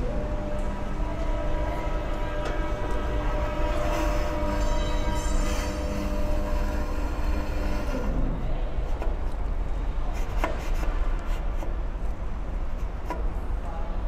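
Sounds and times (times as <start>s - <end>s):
saw drive whine: 0.0s - 9.3s
low machine hum: 0.0s - 14.0s.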